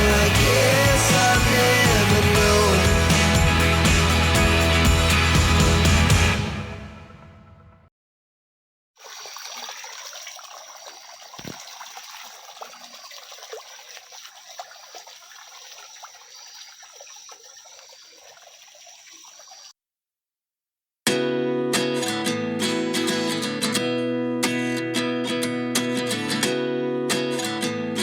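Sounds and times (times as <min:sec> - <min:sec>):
water trickling: 0:09.0 - 0:19.8.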